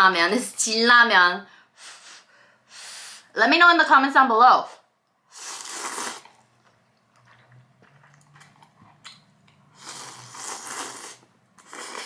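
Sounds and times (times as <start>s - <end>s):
person slurping noodles: 5.3s - 6.4s, 9.7s - 12.0s
faint chewing: 5.5s - 12.0s.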